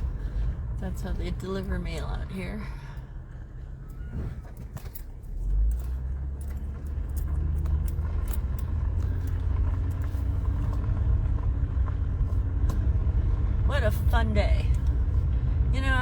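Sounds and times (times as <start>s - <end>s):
vehicle engine and road rumble: 0.0s - 16.0s
sharp clicks and rattles: 3.8s - 12.0s.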